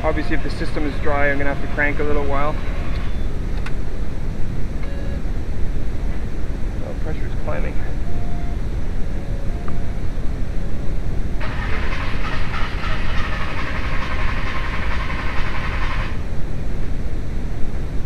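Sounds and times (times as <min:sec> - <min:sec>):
engine cranking on starter: 0:11.4 - 0:16.2.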